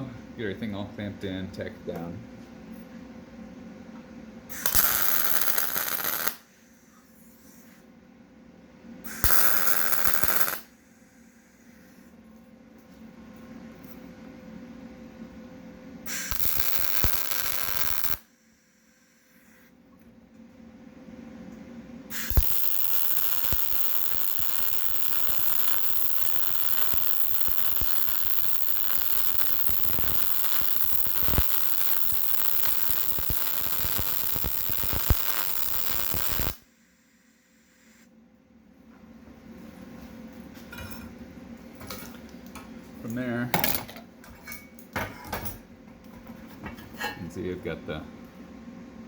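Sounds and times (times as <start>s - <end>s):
arc welding crackling hiss: 4.5s - 7.8s, 9.0s - 12.1s, 16.1s - 19.8s, 22.1s - 38.1s.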